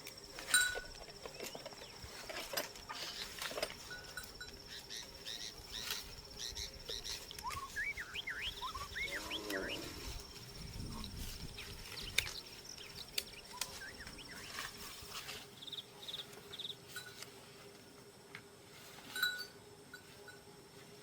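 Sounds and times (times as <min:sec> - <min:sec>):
insects trilling: 0:00.0 - 0:17.4
sharp clicks: 0:11.9 - 0:13.8.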